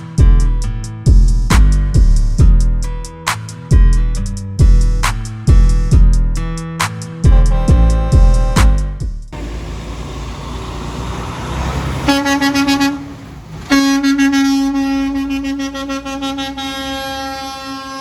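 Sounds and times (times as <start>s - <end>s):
truck horn honking: 7.3s - 9.0s, 11.3s - 18.0s
traffic and engine noise: 9.3s - 18.0s.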